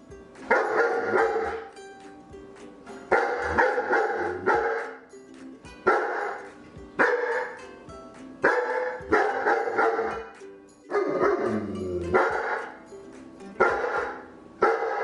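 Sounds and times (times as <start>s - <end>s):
background music: 0.0s - 15.0s
dog barking loudly: 0.5s - 1.7s, 3.1s - 5.0s, 5.9s - 7.6s, 8.4s - 12.8s, 13.6s - 15.0s.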